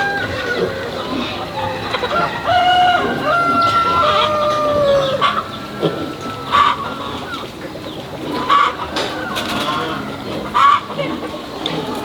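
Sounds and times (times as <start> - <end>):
rooster clucking: 0.0 - 7.4
rooster crowing: 0.0 - 7.4.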